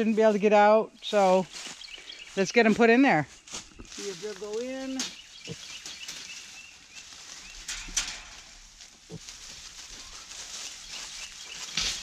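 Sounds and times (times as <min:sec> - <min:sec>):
rustling: 0:00.0 - 0:12.0
faint bird chirps: 0:04.9 - 0:08.4.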